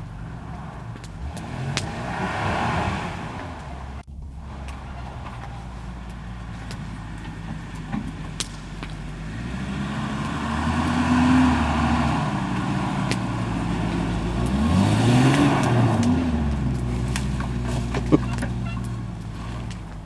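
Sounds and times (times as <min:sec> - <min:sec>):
vehicle engine revving: 0:00.0 - 0:20.0.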